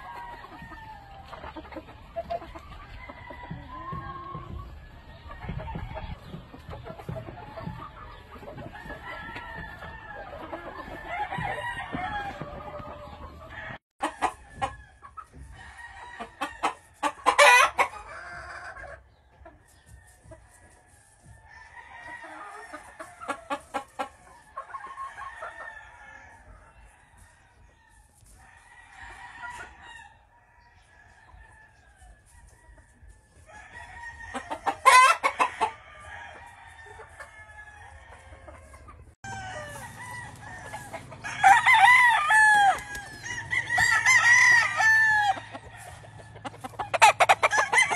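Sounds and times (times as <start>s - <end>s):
roosters crowing: 0.0s - 19.0s, 19.6s - 47.9s
chickens clucking: 0.0s - 47.9s.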